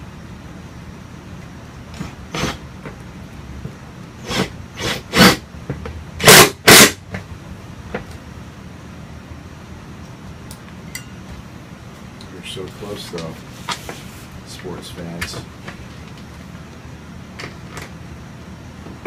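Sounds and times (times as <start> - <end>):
cordless power driver bursts: 4.2 - 5.4, 6.2 - 7.0.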